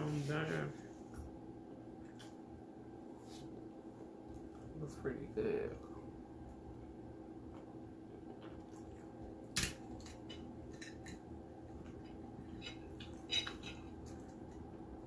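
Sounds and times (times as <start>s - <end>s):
low room hum: 0.0s - 15.0s
tableware clicking and knocking: 10.0s - 11.2s, 12.0s - 14.0s.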